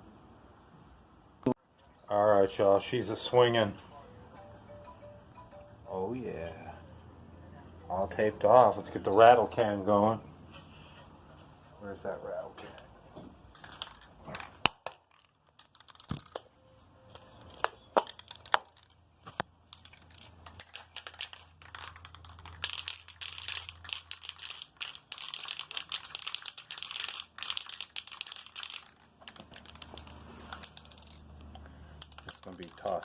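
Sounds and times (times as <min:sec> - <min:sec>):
spray can rattling shaken: 0:13.5 - 0:16.4, 0:18.1 - 0:18.9, 0:19.7 - 0:31.3, 0:32.0 - 0:33.0.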